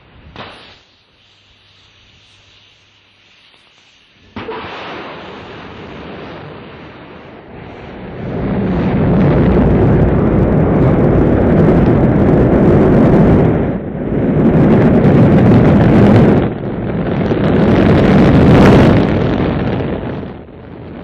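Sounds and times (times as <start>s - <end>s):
loud deep rumbling: 5.1s - 21.0s.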